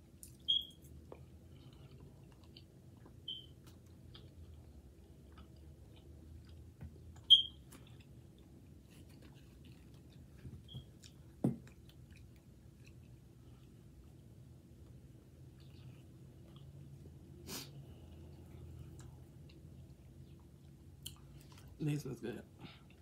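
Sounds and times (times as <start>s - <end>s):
chewing noodles: 0.2s - 17.3s
short high-pitched chirps: 7.3s - 7.6s.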